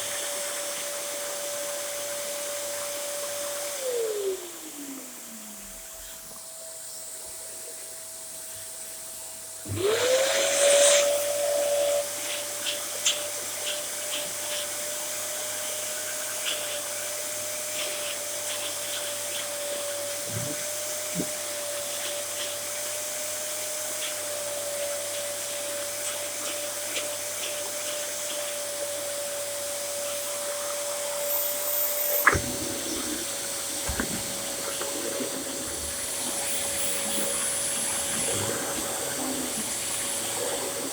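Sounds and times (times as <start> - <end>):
vacuum cleaner motor whine: 0.0 - 40.9
motor spinning up: 30.6 - 40.9.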